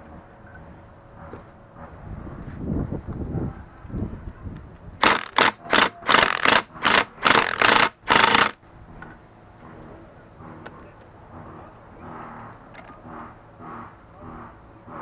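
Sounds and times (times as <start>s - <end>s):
impact gun bursts: 5.0s - 8.6s.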